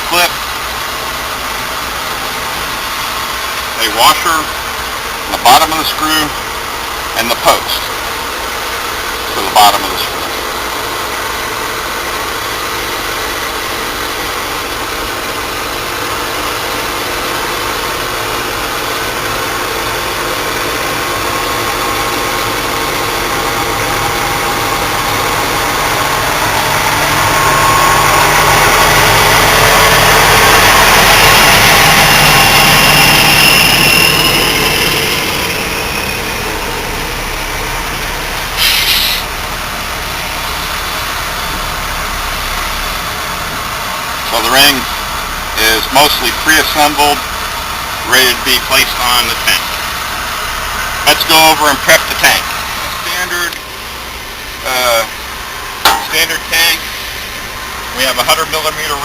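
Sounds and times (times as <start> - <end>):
faint engine whine: 0.0 - 59.0
motor vehicle engine running: 0.0 - 59.0.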